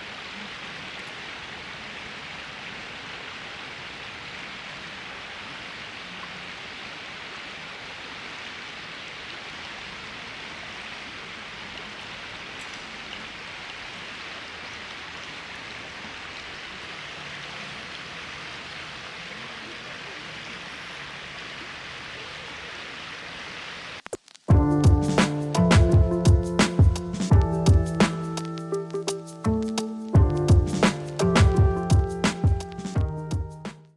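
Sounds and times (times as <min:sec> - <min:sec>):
river water rushing: 0:00.0 - 0:24.0
music: 0:24.5 - 0:33.9.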